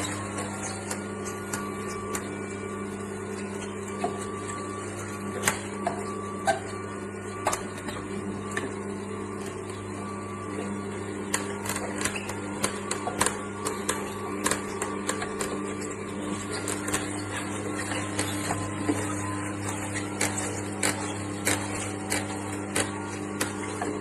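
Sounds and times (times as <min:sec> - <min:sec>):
juicer motor humming: 0:00.0 - 0:24.0.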